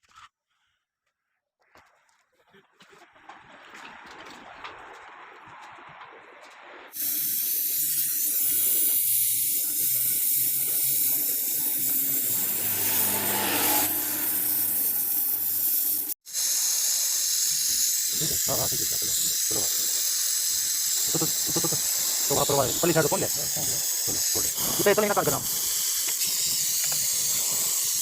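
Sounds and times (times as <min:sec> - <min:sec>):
pressurised gas hissing: 0:06.9 - 0:28.0.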